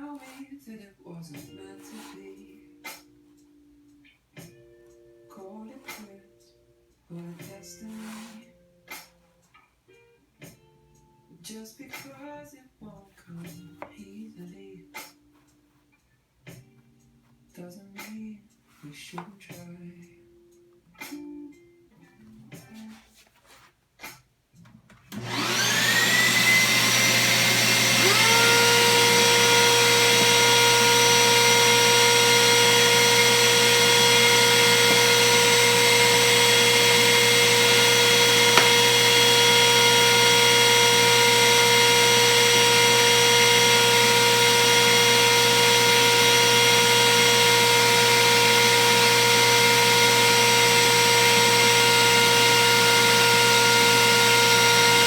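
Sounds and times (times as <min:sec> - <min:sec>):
router motor whine: 0:25.2 - 0:55.0
second motor spinning up: 0:25.2 - 0:55.0.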